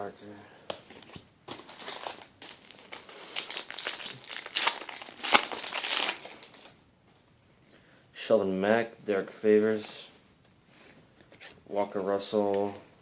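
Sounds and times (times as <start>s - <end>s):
wrapper crinkling and tearing: 1.5s - 6.8s.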